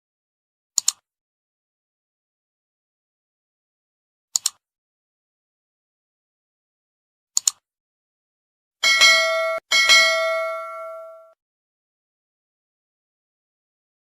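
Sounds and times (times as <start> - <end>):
bright bell-like chime: 8.8 - 11.4.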